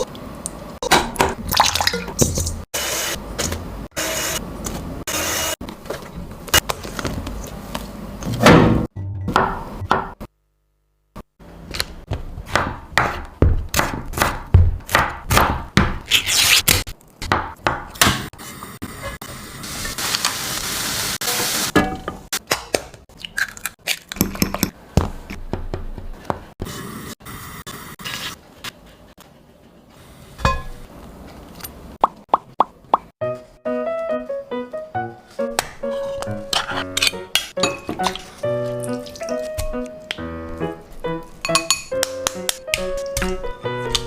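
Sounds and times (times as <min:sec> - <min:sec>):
knife chopping on wooden board: 0:12.1 - 0:16.0
background music: 0:33.2 - 0:44.0.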